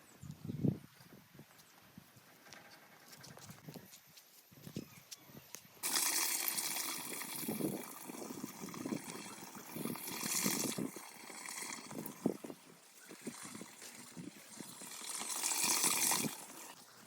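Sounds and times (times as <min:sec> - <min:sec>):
water rushing out hiss: 0:05.8 - 0:16.8
water splashes: 0:05.8 - 0:16.8.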